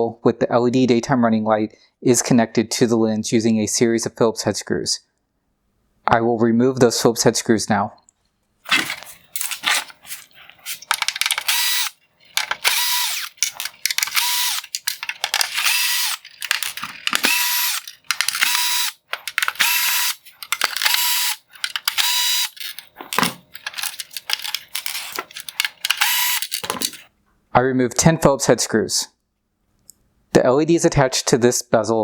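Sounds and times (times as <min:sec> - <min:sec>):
power screwdriver whirring: 0:08.7 - 0:27.1.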